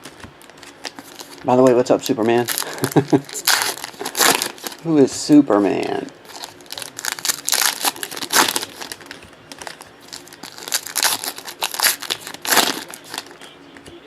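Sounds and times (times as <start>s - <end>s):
card pack wrappers crinkling: 0.0s - 13.5s.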